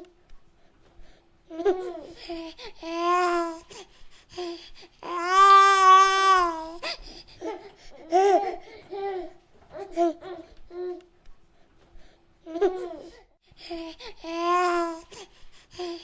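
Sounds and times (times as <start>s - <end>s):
baby cooing and babbling: 1.5s - 3.8s, 4.4s - 11.1s, 12.5s - 16.0s.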